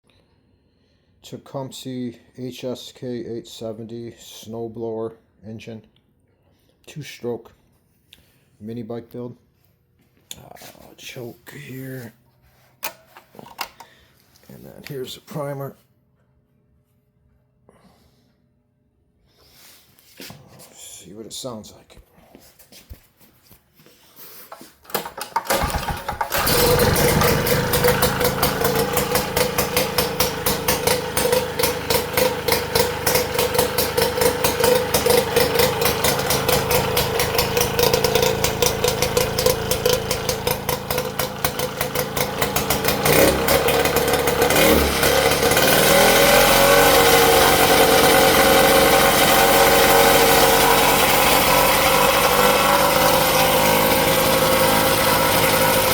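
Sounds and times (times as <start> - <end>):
two-stroke engine running: 25.1 - 55.9.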